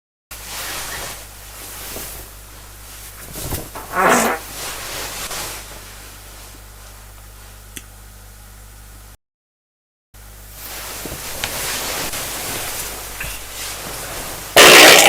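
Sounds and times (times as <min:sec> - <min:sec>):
background hum and hiss: 0:00.3 - 0:09.2, 0:10.2 - 0:15.0
person farting: 0:03.8 - 0:04.4, 0:14.6 - 0:15.0.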